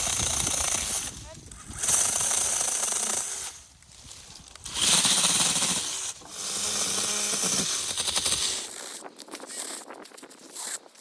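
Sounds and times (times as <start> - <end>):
chainsaw cutting wood: 0.0 - 3.8, 4.5 - 9.0.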